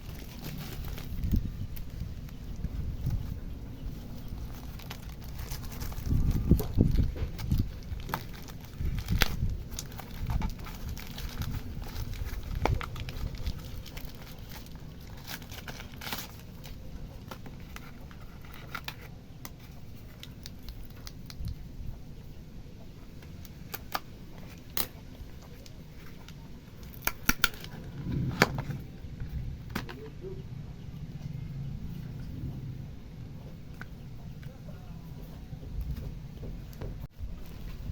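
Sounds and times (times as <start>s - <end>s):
packaging being handled: 0.0s - 21.6s
low steady hum: 0.0s - 37.9s.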